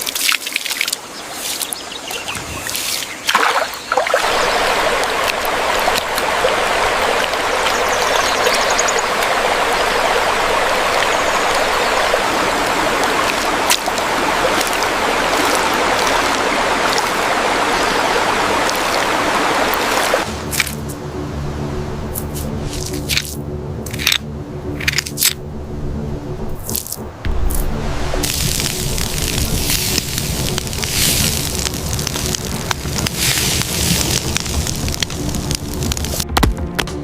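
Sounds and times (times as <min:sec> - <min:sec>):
running water rushing: 0:00.0 - 0:36.4
low steady hum: 0:20.3 - 0:36.0.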